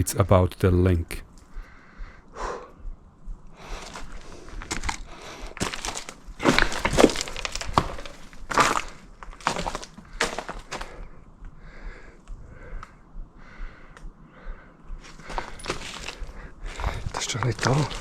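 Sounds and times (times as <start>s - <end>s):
crunching over brittle ground: 3.7s - 11.1s, 15.0s - 18.0s.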